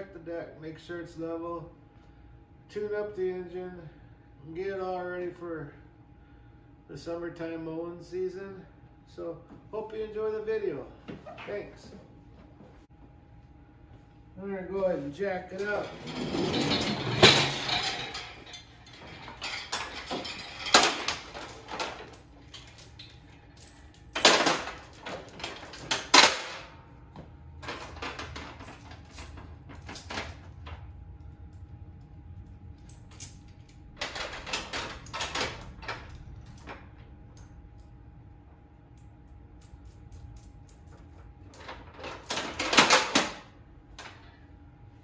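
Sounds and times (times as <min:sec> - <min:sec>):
metal jack clanking and scraping: 0:15.5 - 0:26.7, 0:32.9 - 0:37.5.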